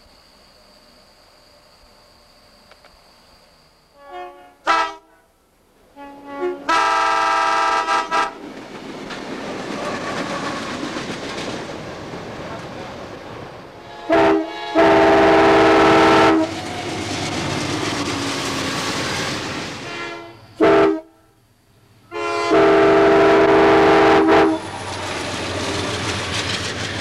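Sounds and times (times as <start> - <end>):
locomotive air horn blasts: 4.0 - 5.3, 5.9 - 8.4, 13.8 - 16.5, 19.8 - 21.4, 22.1 - 24.7.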